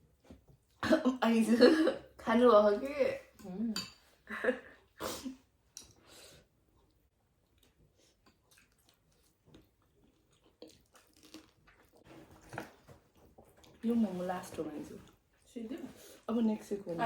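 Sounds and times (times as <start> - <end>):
faint chewing of food: 5.7 - 16.3.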